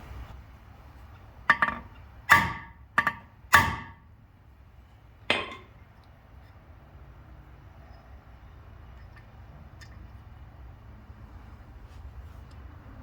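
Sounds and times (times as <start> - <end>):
hammer striking steel: 1.5 - 4.1, 5.3 - 5.8.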